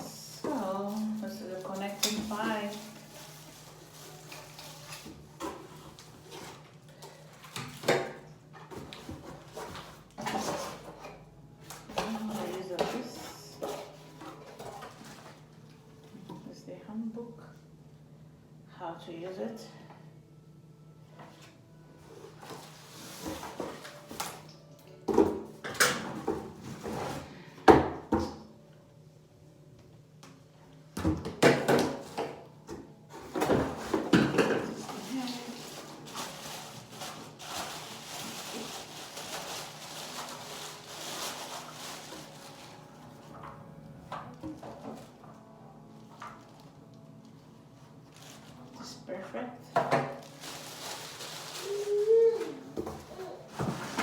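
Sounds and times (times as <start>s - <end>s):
packaging rustling: 0.0s - 15.6s, 21.4s - 24.5s, 33.2s - 45.4s, 46.0s - 48.8s, 50.0s - 54.0s.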